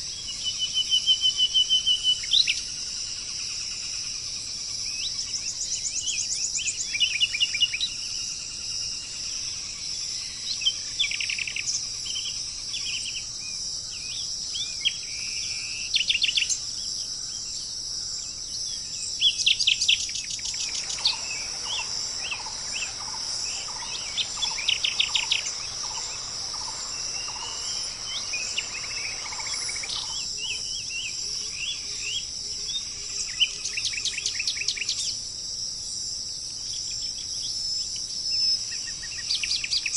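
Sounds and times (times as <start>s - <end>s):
high-pitched insect drone: 0.0s - 35.2s
birds chirping and trilling: 14.0s - 35.2s
low repeated bird note: 19.9s - 30.6s.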